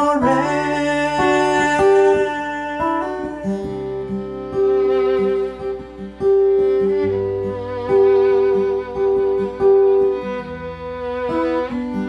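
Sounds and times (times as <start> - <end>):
fiddle bowed notes: 0.0 - 12.0
plucked acoustic guitar: 0.0 - 12.0.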